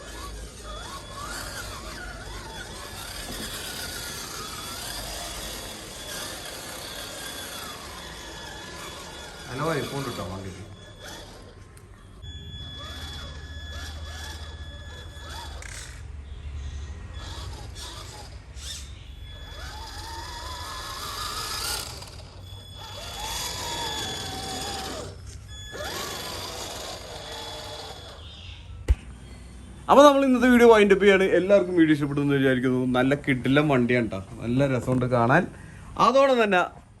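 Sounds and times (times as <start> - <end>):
toy car electric motor whining: 0.0 - 28.9.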